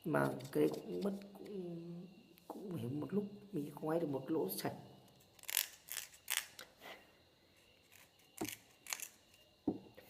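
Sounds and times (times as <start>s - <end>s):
knife scraping bamboo: 5.2s - 6.7s, 7.6s - 9.5s.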